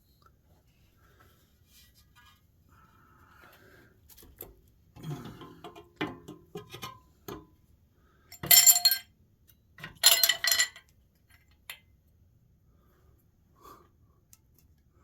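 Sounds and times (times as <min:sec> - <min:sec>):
metal engine parts clattering: 0:08.4 - 0:09.0, 0:09.9 - 0:10.8.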